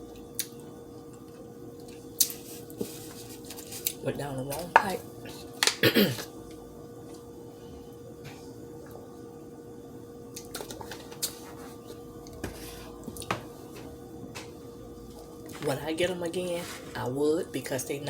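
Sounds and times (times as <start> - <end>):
steady hum: 0.0 - 18.0
person clearing throat: 5.7 - 6.3.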